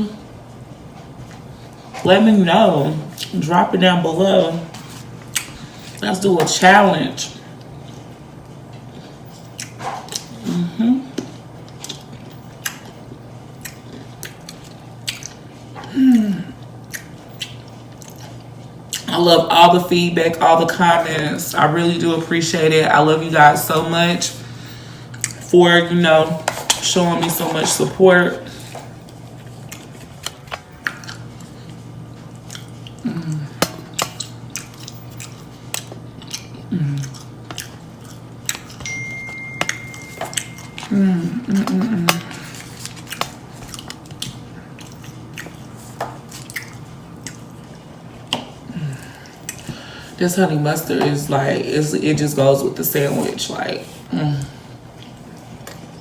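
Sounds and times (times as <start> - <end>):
chewing and lip-smacking: 7.6 - 10.4, 11.1 - 15.8, 16.8 - 19.1, 25.1 - 25.5, 28.8 - 38.8, 41.5 - 48.6, 49.2 - 49.7.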